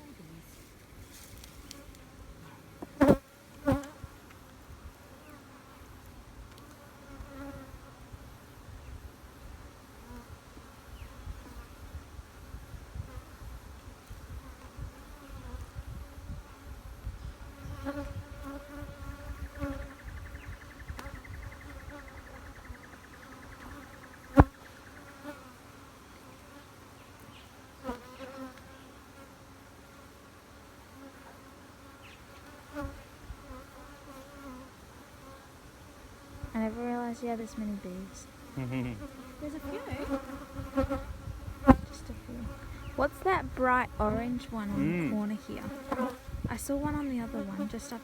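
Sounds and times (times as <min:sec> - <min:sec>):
bee flying close past: 0:03.0 - 0:04.2, 0:06.8 - 0:07.9, 0:14.2 - 0:26.6, 0:27.8 - 0:29.3, 0:31.0 - 0:35.5, 0:36.1 - 0:48.0
bees buzzing: 0:31.9 - 0:48.0.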